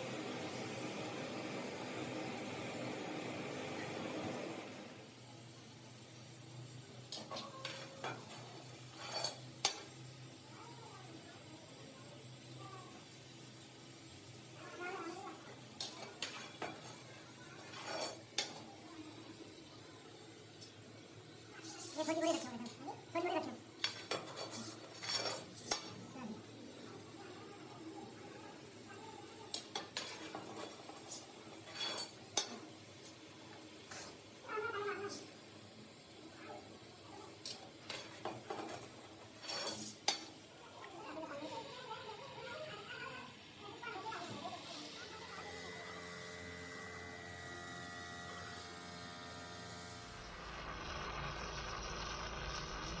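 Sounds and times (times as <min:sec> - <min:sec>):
rough machine running noise: 0:45.4 - 0:53.0
machine hum: 0:46.3 - 0:53.0.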